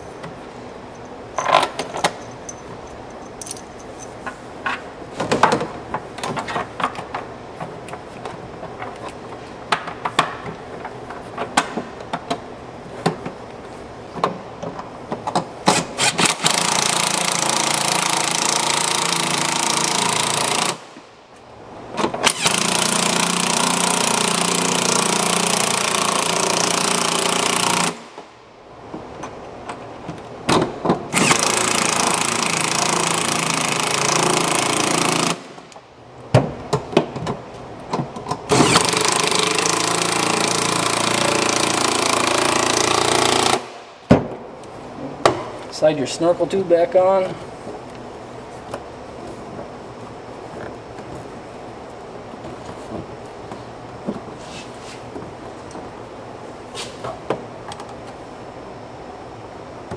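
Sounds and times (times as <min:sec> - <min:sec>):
power driver running in fasteners: 0:15.6 - 0:20.9, 0:22.2 - 0:28.2, 0:31.1 - 0:35.6, 0:38.5 - 0:43.8.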